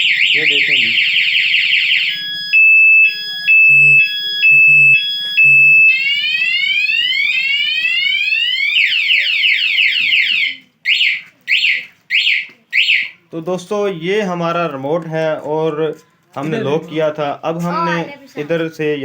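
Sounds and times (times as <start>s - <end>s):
motorcycle alarm siren: 0.0s - 13.2s.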